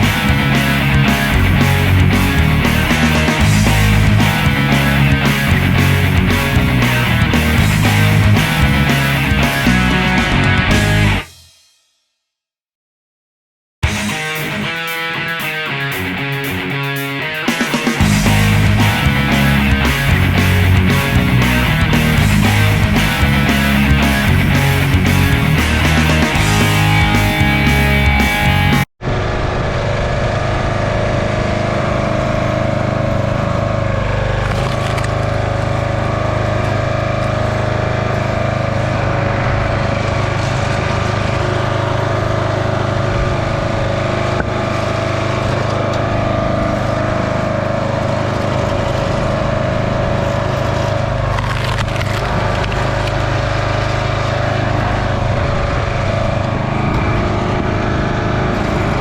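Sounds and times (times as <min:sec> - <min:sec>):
small gasoline engine running: 0:29.8 - 0:59.0.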